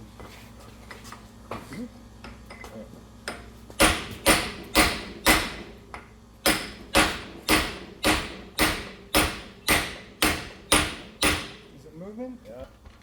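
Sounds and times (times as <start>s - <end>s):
hammer striking metal vise: 3.3s - 11.7s.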